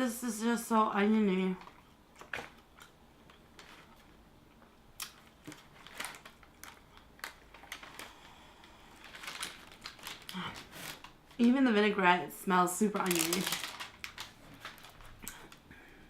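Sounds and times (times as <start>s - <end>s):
eating a sandwich crunches: 1.6s - 11.4s.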